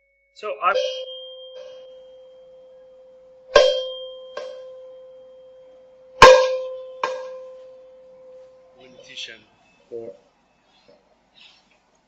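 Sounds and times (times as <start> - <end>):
resonant object struck and ringing: 0.0 - 8.8.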